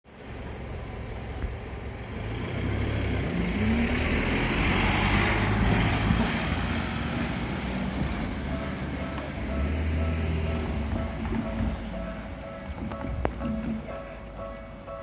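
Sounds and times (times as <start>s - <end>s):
vehicle passing by: 2.0s - 13.6s.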